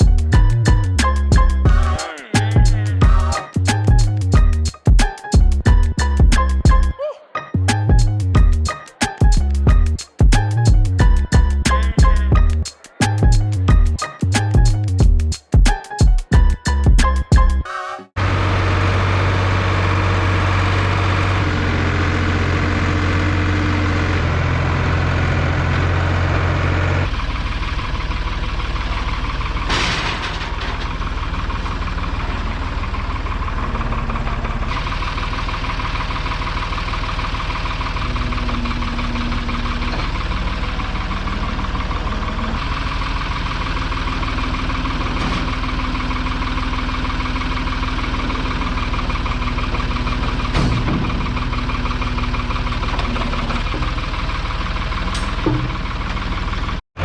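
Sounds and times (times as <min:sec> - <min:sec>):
engine running: 0:16.4 - 0:56.8.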